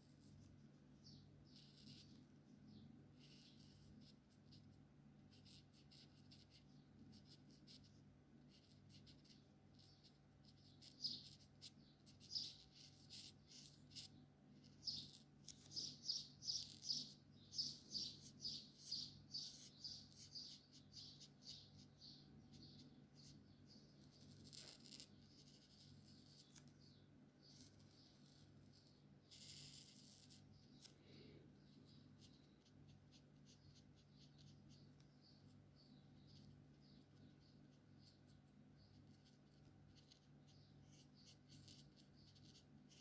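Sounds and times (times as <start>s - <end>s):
marker rubbing on paper: 1.5s - 2.2s, 3.1s - 23.4s, 24.0s - 26.7s, 27.5s - 30.9s, 39.1s - 43.0s.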